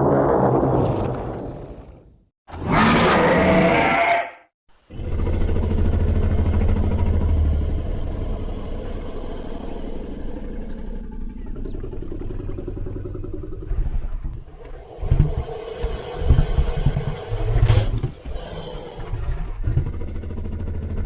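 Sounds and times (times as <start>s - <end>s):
low rumbling dinosaur growl: 4.9s - 21.0s.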